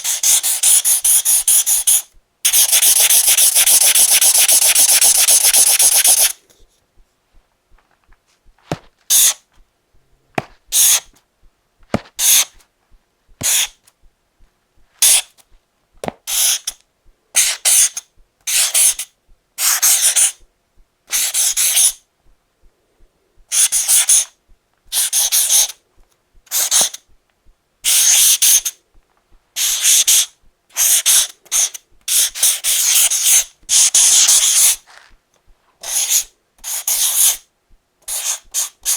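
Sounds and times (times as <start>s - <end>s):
marker scratching on paper: 0.0s - 6.4s, 8.7s - 9.4s, 10.4s - 11.1s, 11.9s - 12.6s, 13.4s - 13.8s, 15.0s - 15.4s, 16.3s - 16.8s, 17.4s - 20.4s, 21.1s - 22.0s, 23.5s - 24.3s, 24.9s - 25.8s, 26.5s - 27.0s, 27.9s - 28.7s, 29.6s - 34.8s, 35.8s - 37.4s, 38.1s - 38.9s.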